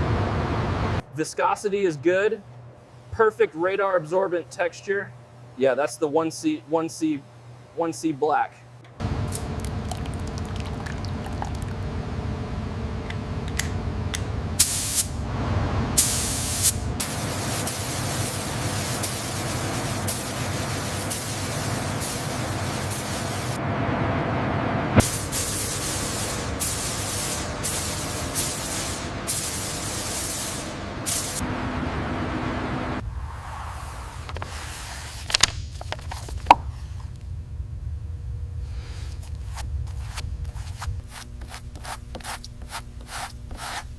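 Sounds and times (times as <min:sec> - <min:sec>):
low steady rumble: 0:08.7 - 0:18.5, 0:23.5 - 0:29.6, 0:35.6 - 0:43.9
paint spray gun hissing: 0:14.6 - 0:15.1, 0:16.0 - 0:23.6, 0:25.0 - 0:31.4.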